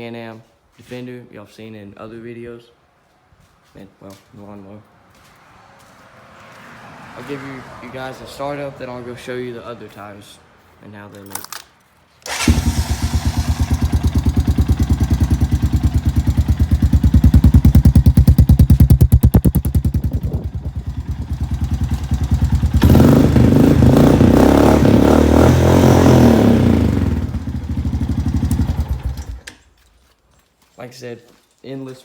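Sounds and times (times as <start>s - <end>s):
atv engine revving and idling: 12.3s - 29.5s.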